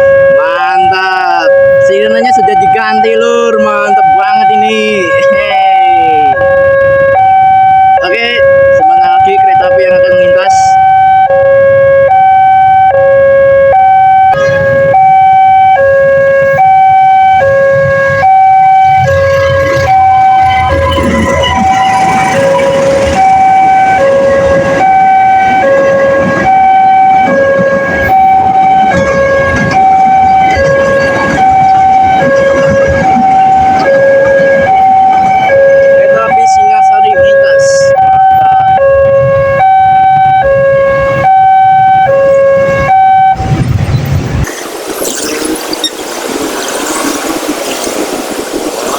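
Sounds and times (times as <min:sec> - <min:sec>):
two-tone level crossing siren: 0:00.0 - 0:46.0
road traffic rumble: 0:00.0 - 0:48.9.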